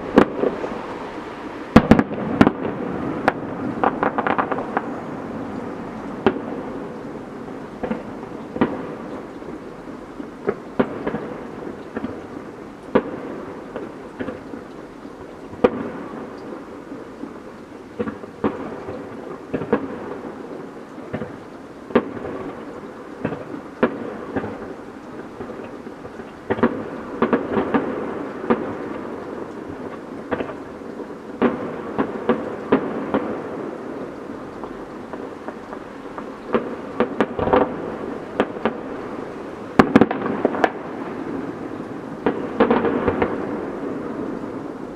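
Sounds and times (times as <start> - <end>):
firework bangs: 0.0 - 6.9, 7.8 - 9.2, 10.2 - 12.2, 12.9 - 14.5, 18.0 - 20.2, 21.1 - 22.6, 23.2 - 24.8, 25.4 - 33.8, 34.6 - 44.6
crackling hiss: 0.0 - 44.9.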